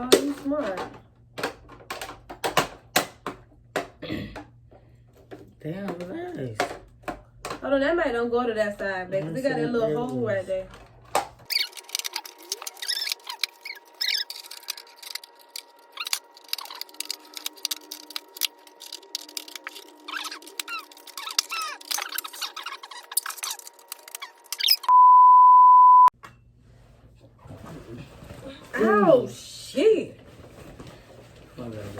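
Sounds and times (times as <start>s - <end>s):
high-pitched squeaky chirps: 11.5s - 17.0s, 19.6s - 24.9s
loud steady beep tone: 24.9s - 26.1s.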